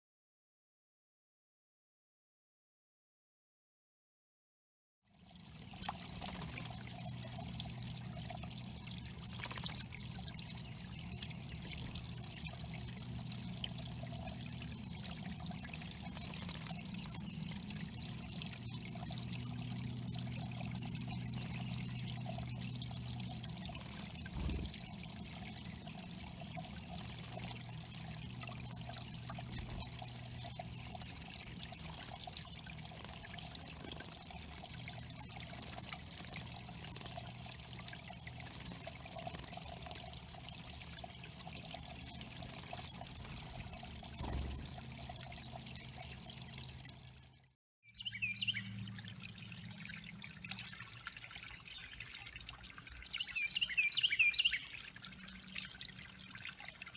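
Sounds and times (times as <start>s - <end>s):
water trickling into pond: 5.1s - 56.9s.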